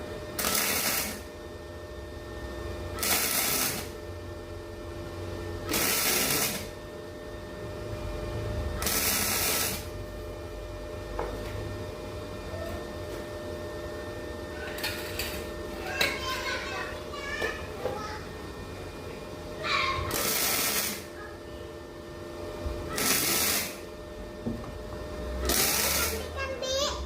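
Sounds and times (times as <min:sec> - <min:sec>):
welder steady hum: 0:00.0 - 0:27.0
welding arc bursts: 0:00.4 - 0:01.3, 0:03.0 - 0:04.0, 0:05.6 - 0:06.8, 0:08.8 - 0:09.9, 0:19.8 - 0:21.1, 0:22.9 - 0:23.9, 0:25.4 - 0:26.4.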